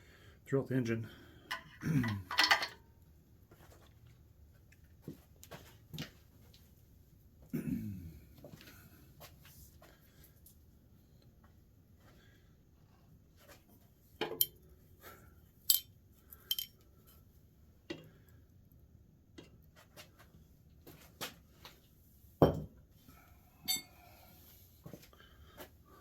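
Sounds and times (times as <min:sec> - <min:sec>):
metal tools clanking: 0:01.5 - 0:02.8, 0:16.4 - 0:16.7, 0:23.7 - 0:24.0.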